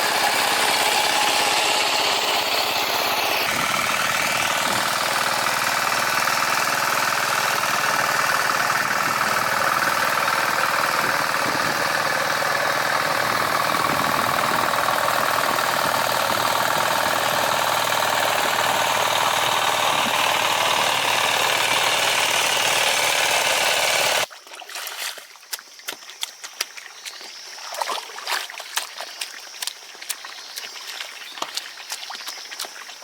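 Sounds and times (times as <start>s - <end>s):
rattling farm machine engine: 0.0s - 24.3s
water splashing: 24.2s - 33.0s.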